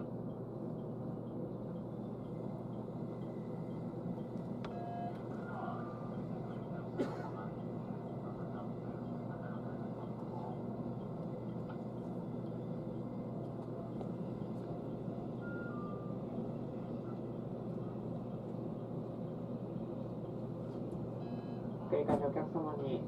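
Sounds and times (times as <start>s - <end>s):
train carriage equipment hum: 0.0s - 23.0s
faint high steady tone: 13.8s - 17.2s.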